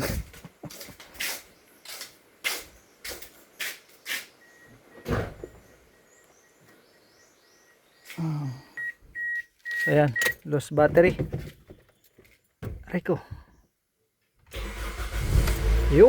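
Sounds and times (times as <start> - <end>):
sharp clicks and clunks: 9.6 - 12.9.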